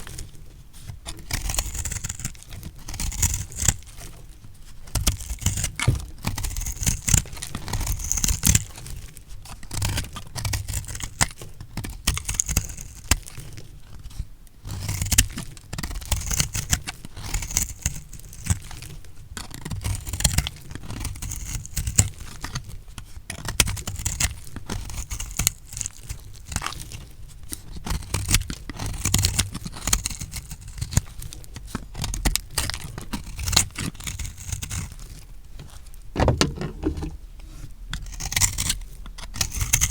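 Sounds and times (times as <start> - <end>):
dull low knocks: 36.2 - 37.2.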